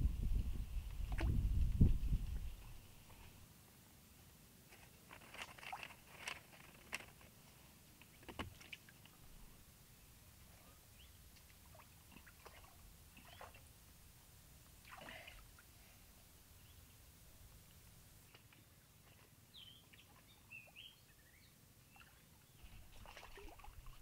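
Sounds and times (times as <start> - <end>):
water sloshing: 11.5 - 13.7, 22.6 - 24.0
splashes in shallow water: 22.8 - 24.0.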